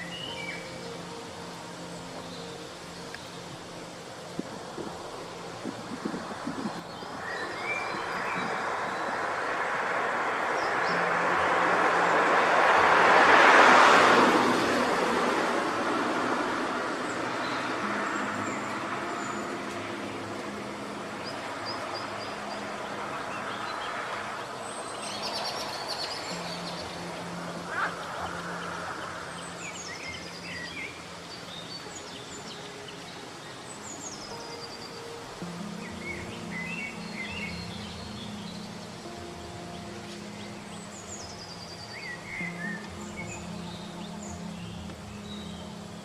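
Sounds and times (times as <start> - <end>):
birds chirping: 0.0 - 46.0
outdoor noise haze: 0.0 - 46.0
soft music of held chords: 0.0 - 46.0
high bird chirps: 6.5 - 11.1.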